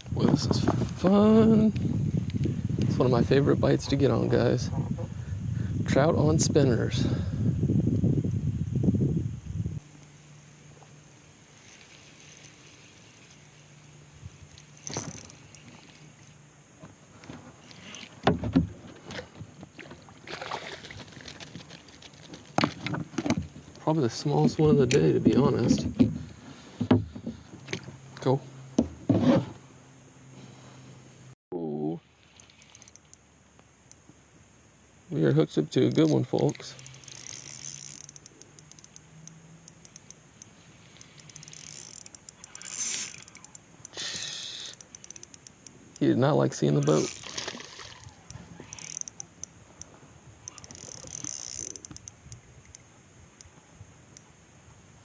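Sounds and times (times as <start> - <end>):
fishing reel ticking: 11.4 - 16.4, 32.2 - 33.2, 35.8 - 53.5
fish splashing in water: 19.8 - 21.4, 47.1 - 48.2
knocks on kayak side: 26.8 - 27.4.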